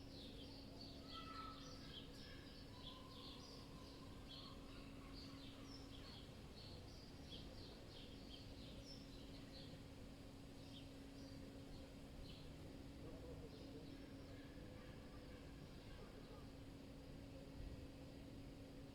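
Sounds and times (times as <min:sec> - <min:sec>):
small birds chirping: 0:00.1 - 0:09.8.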